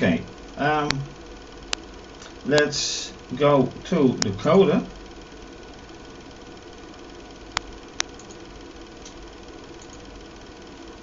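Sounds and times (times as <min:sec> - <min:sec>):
small machine humming: 0:00.0 - 0:11.0
sharp clicks: 0:07.5 - 0:08.4, 0:09.8 - 0:10.0.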